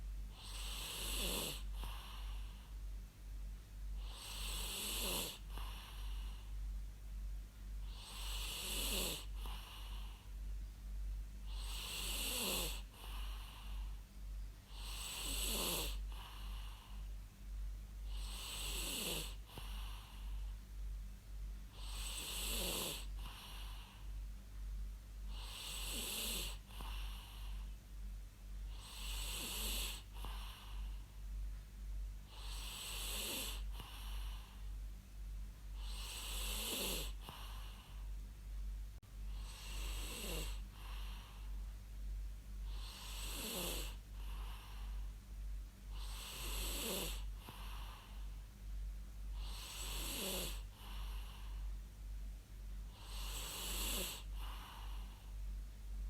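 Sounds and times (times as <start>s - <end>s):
constant low hum: 0.0s - 56.0s
person snoring: 0.4s - 2.5s, 4.0s - 6.4s, 7.9s - 10.2s, 11.5s - 14.0s, 14.7s - 17.0s, 18.1s - 20.4s, 21.8s - 24.0s, 25.3s - 27.6s, 28.7s - 30.9s, 32.3s - 34.6s, 35.8s - 38.0s, 39.3s - 41.4s, 42.7s - 45.0s, 45.9s - 48.3s, 49.4s - 51.6s, 53.0s - 55.2s.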